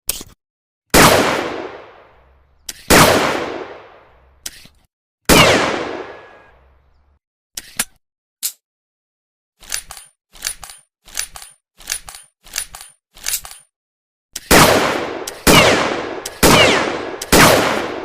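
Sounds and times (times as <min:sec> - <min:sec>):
revolver gunshots echoing: 0:00.9 - 0:02.2, 0:02.9 - 0:04.1, 0:05.3 - 0:06.5, 0:14.5 - 0:18.0.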